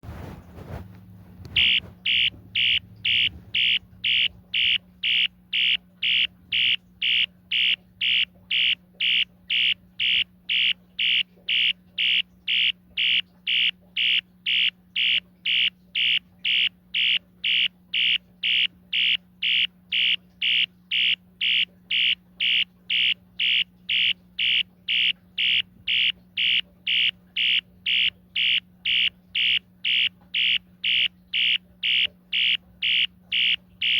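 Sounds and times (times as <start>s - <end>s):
pulsing fire alarm horn: 1.6s - 33.9s.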